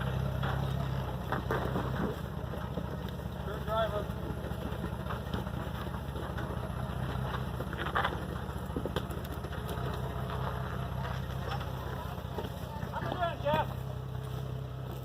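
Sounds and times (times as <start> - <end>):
vehicle engine idling: 0.0 - 15.0.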